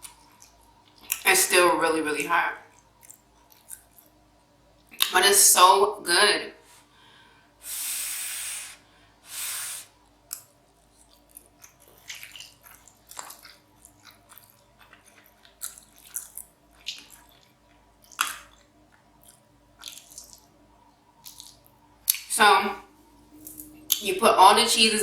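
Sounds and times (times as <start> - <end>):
close-up chewing: 0.0 - 1.3, 2.7 - 5.1, 10.0 - 22.3
wet mouth clicks and smacks: 2.8 - 4.1, 10.3 - 20.5, 21.2 - 22.3
short hissing bursts: 7.6 - 10.0.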